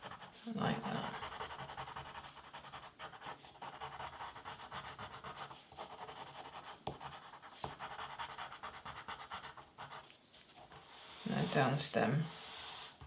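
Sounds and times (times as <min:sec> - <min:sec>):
pencil scratching on paper: 0:00.0 - 0:13.0.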